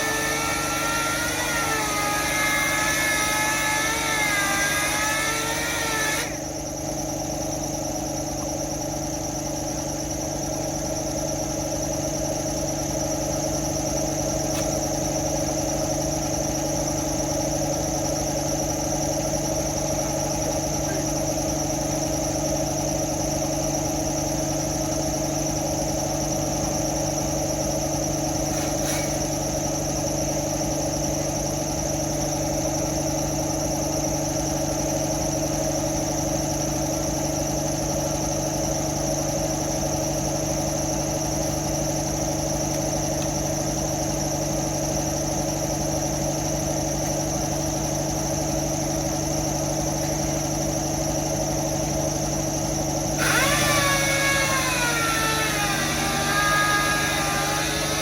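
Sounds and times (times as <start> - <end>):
motor humming: 0.0 - 7.1, 53.2 - 58.0.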